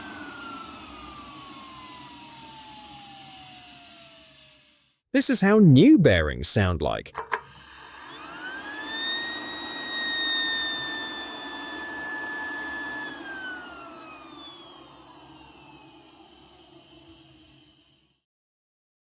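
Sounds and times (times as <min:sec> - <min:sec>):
blower whine: 0:00.0 - 0:04.9, 0:07.4 - 0:18.1.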